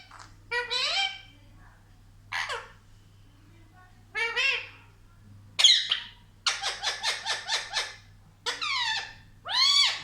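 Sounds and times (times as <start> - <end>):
parrot calling and chattering: 0.0 - 1.3, 5.6 - 10.0.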